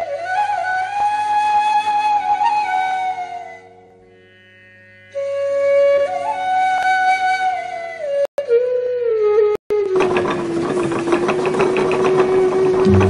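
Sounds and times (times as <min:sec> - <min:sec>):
flute sliding notes: 0:00.0 - 0:04.2, 0:05.1 - 0:10.0, 0:12.6 - 0:13.0
rapid pulsing rattle: 0:10.0 - 0:13.0.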